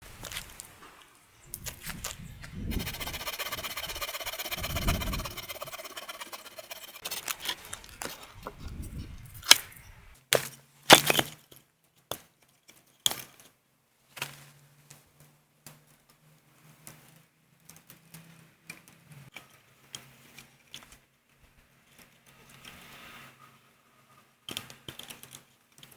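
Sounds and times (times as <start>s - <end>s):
wood cracking and splintering: 9.4s - 9.7s, 10.3s - 11.4s.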